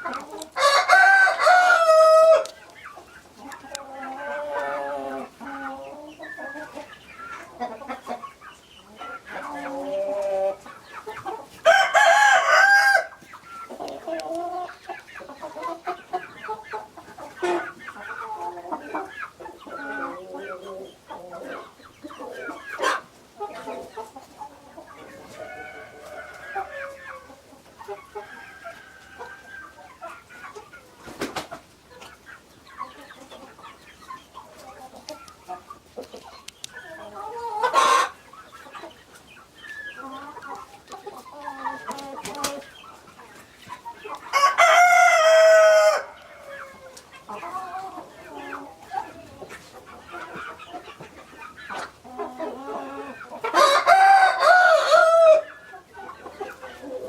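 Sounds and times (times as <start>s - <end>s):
chickens clucking: 0.0s - 57.0s
rooster crowing: 0.6s - 2.5s, 11.6s - 13.2s, 25.1s - 26.9s, 44.3s - 47.0s, 53.6s - 55.5s.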